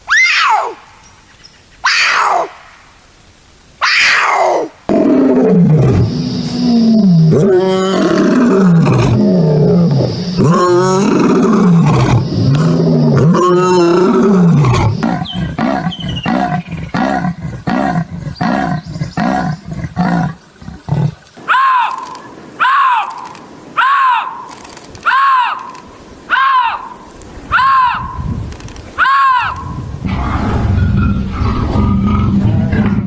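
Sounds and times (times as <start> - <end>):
high-pitched animal calls: 0.1 - 0.8, 1.8 - 2.5, 3.8 - 4.7, 5.8 - 28.3
lion roaring: 4.2 - 21.2, 30.1 - 33.0
big cat grunts: 7.3 - 21.2.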